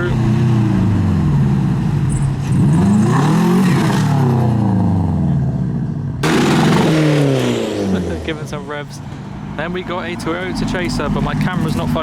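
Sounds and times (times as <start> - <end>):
car engine revving: 0.0 - 12.0
loud rushing noise: 6.2 - 8.9.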